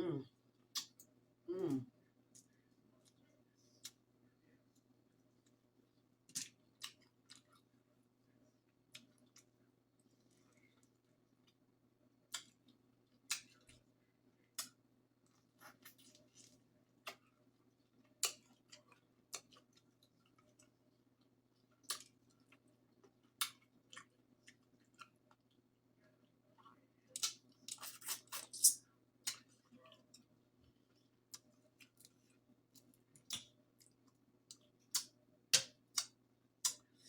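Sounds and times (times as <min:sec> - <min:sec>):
faint low hum: 0:00.0 - 0:37.0
wet chewing and lip smacks: 0:00.7 - 0:01.1, 0:08.9 - 0:11.6, 0:12.3 - 0:13.8, 0:18.0 - 0:25.6, 0:26.6 - 0:36.9.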